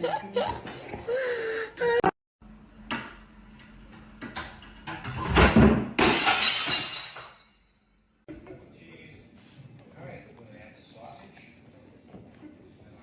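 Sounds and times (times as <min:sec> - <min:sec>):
glass shattering: 0:06.0 - 0:07.8.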